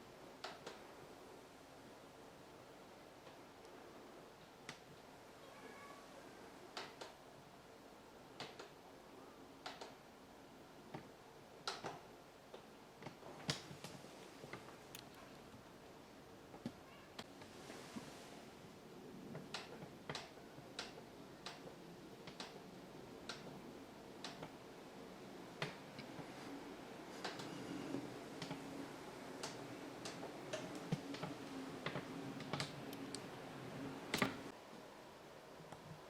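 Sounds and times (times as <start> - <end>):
hands handling equipment clicks: 34.1 - 34.5.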